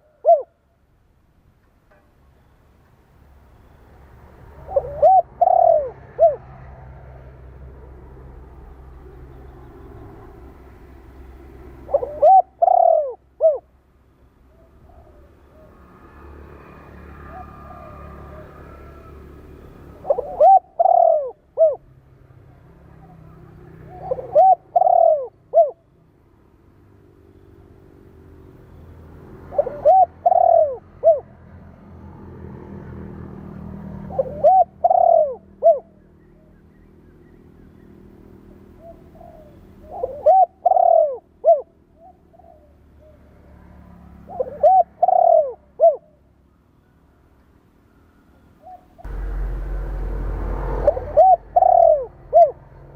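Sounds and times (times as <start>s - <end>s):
dove cooing: 0.0s - 0.6s, 4.5s - 7.3s, 11.8s - 13.7s, 14.5s - 15.8s, 20.0s - 21.9s, 22.9s - 25.9s, 29.4s - 31.4s, 33.9s - 36.5s, 38.7s - 43.3s, 44.1s - 46.2s, 50.6s - 52.7s.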